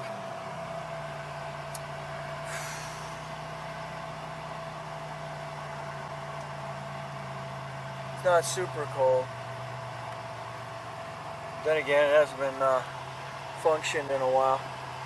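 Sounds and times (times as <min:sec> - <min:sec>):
car engine idling: 0:00.0 - 0:15.0
brief hiss: 0:02.5 - 0:03.2.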